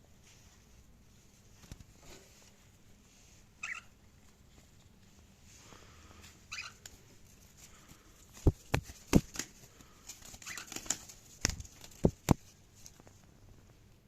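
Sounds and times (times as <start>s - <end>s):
cockatiel chirps: 3.6s - 4.0s, 6.5s - 6.8s, 10.4s - 10.7s.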